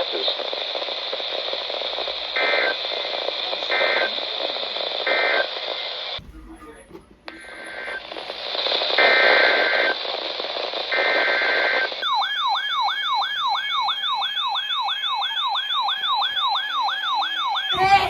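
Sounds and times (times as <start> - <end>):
radio static: 0.0 - 12.1
electronic yelp siren: 11.9 - 18.0.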